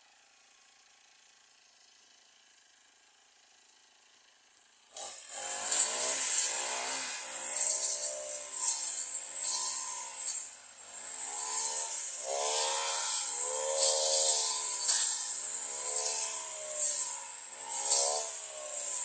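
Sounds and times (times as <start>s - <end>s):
rasping sawing strokes: 5.0s - 19.0s.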